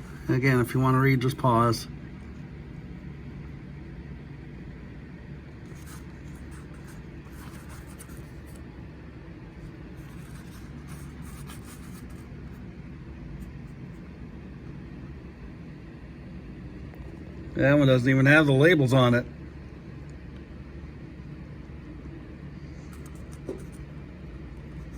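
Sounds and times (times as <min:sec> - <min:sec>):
paper rustling: 0:05.7 - 0:08.6, 0:09.9 - 0:12.4, 0:22.9 - 0:23.8.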